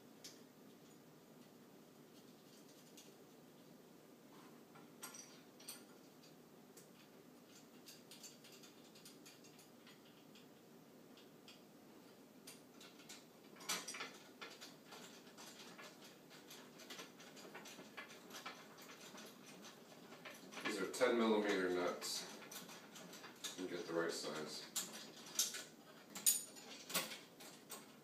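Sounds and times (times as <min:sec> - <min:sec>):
small metal hardware clicking: 0:24.7 - 0:28.0.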